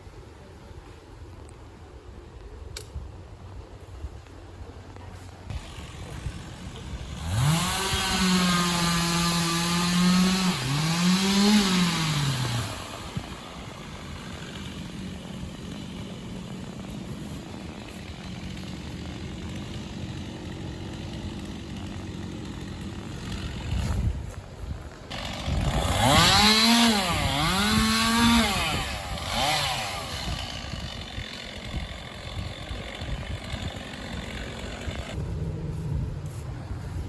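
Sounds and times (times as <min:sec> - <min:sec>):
chainsaw revving: 0:05.5 - 0:24.1, 0:25.1 - 0:35.2
low rumble: 0:35.2 - 0:37.0.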